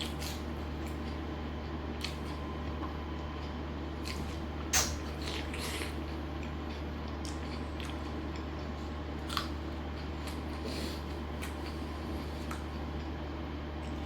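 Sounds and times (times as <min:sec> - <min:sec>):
person chewing food: 0:00.0 - 0:14.0.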